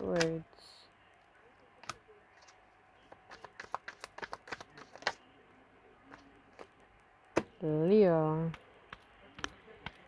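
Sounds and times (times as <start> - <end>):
cards clicking and tapping: 0.0 - 0.4, 1.8 - 5.2, 8.4 - 10.0.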